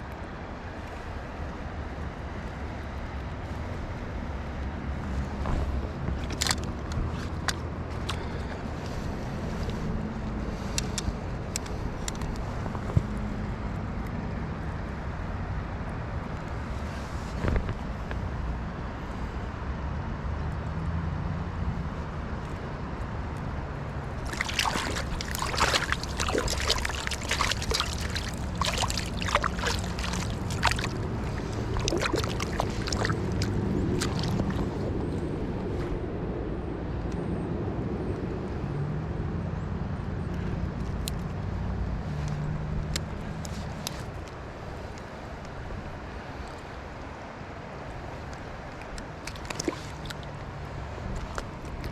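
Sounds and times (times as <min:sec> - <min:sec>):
river water running: 0:00.0 - 0:15.4, 0:24.0 - 0:35.5, 0:41.1 - 0:51.9
water splashing and sloshing: 0:04.9 - 0:13.4, 0:24.0 - 0:35.3, 0:47.6 - 0:51.9.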